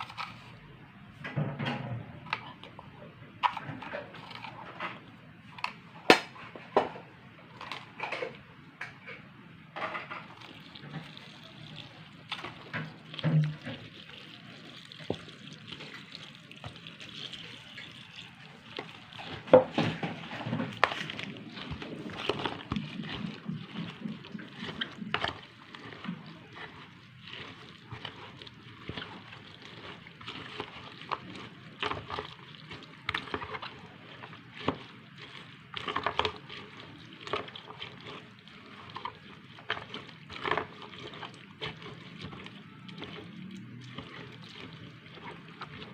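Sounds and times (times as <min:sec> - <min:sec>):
batter sloshing in a bowl: 0:09.8 - 0:45.9.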